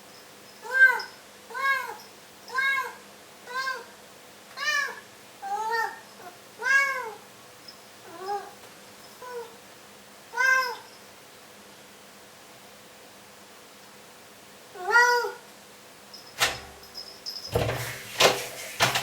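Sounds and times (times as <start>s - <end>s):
cat meowing: 6.6s - 7.2s, 10.4s - 10.9s.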